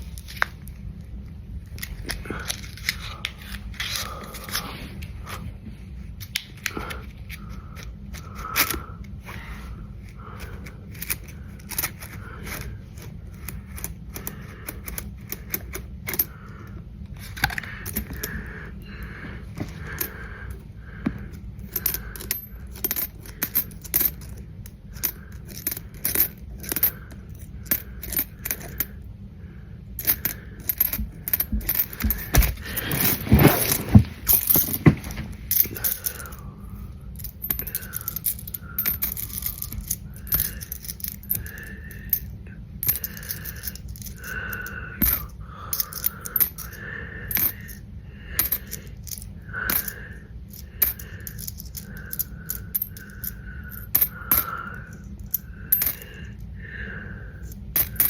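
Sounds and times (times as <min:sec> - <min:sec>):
coins clicking: 0:21.6 - 0:28.9, 0:30.0 - 0:34.9, 0:35.5 - 0:36.4, 0:37.2 - 0:46.7, 0:47.3 - 0:47.8, 0:48.4 - 0:54.6, 0:55.2 - 0:56.1, 0:57.5 - 0:58.0
coins jingling: 0:21.6 - 0:28.9, 0:30.0 - 0:36.3, 0:37.2 - 0:46.7, 0:47.3 - 0:47.8, 0:48.4 - 0:54.6, 0:55.2 - 0:56.0, 0:57.8 - 0:58.0.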